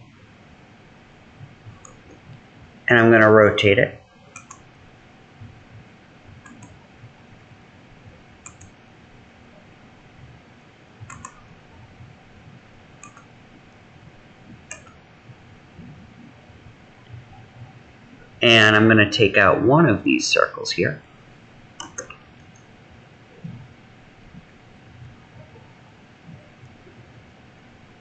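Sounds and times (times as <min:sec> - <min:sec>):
faint steady hum: 0:00.0 - 0:28.0
computer mouse clicks: 0:01.7 - 0:02.4, 0:04.3 - 0:04.6, 0:06.4 - 0:06.8, 0:08.4 - 0:08.8, 0:11.1 - 0:11.5, 0:13.0 - 0:13.3, 0:14.7 - 0:15.0, 0:21.8 - 0:22.7.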